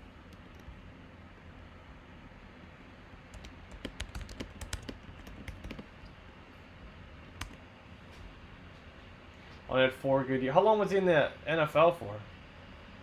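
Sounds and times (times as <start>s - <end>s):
computer keyboard typing: 0.3s - 0.8s, 3.3s - 6.1s, 7.4s - 7.6s.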